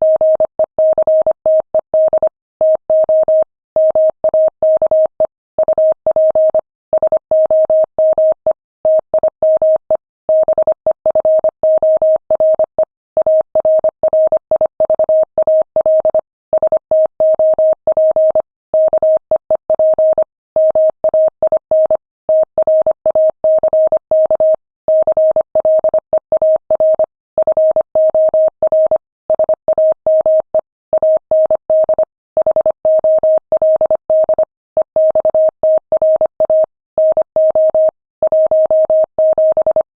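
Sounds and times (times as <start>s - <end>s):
morse code tone: 31.0s - 39.9s.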